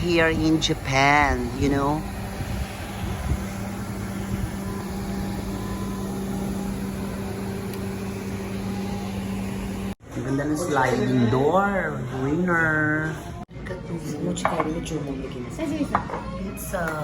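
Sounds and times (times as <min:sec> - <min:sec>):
steady machine hum: 0:00.0 - 0:10.8.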